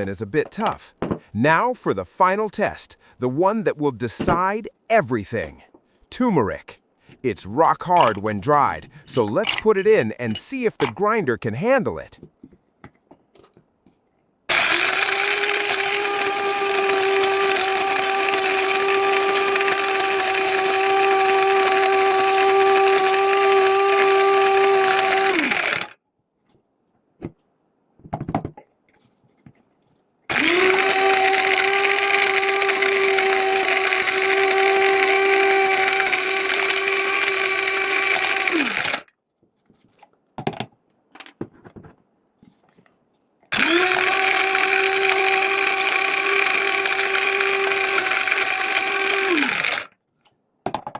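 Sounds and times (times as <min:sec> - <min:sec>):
electric spice grinder whining: 0:14.5 - 0:26.0, 0:30.3 - 0:39.1, 0:43.5 - 0:49.9.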